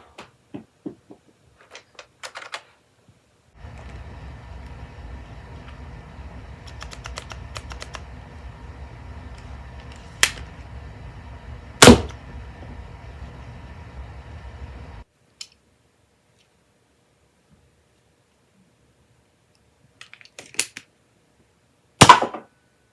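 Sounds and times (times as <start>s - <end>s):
small plastic clicks: 1.6s - 2.8s, 20.0s - 20.9s.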